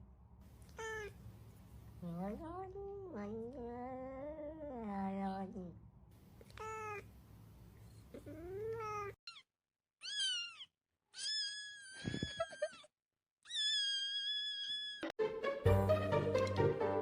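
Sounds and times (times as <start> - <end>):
cat meowing: 0.6 - 1.2, 6.4 - 7.1, 8.2 - 9.4, 10.0 - 12.3.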